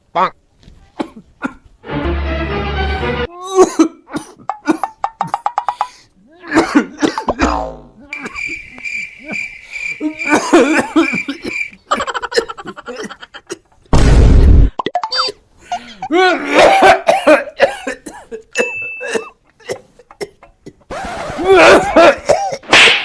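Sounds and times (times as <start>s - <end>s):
person coughing: 3.5s - 5.4s, 6.4s - 8.4s, 10.1s - 11.6s, 16.1s - 20.8s, 21.6s - 22.7s.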